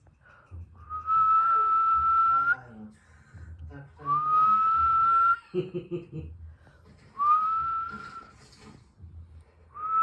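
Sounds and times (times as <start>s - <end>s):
person whistling: 0.8s - 2.6s, 4.1s - 5.4s, 7.2s - 8.3s, 9.8s - 10.0s.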